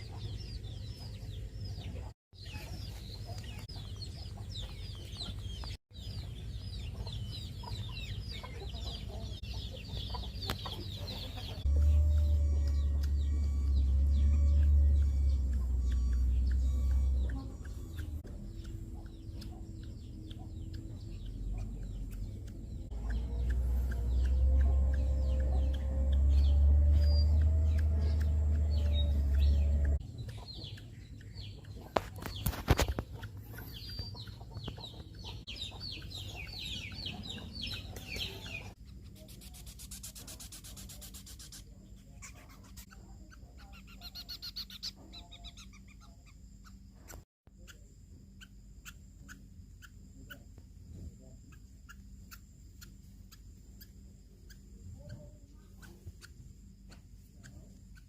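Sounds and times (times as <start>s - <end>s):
birds chirping: 0.0s - 58.0s
heavy low rumble: 11.5s - 30.2s.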